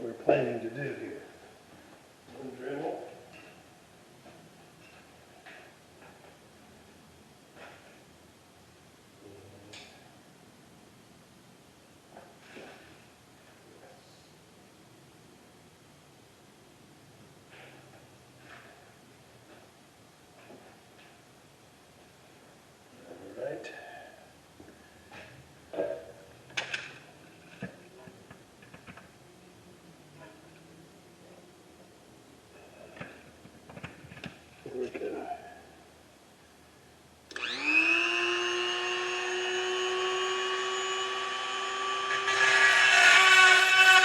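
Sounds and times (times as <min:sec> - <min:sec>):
rotary bit grinding metal: 0:37.3 - 0:44.0
rotary tool motor whine: 0:37.3 - 0:44.0.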